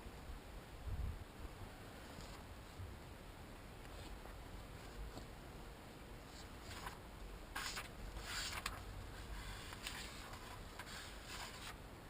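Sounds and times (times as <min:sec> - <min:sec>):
pages swishing: 0:06.3 - 0:11.8.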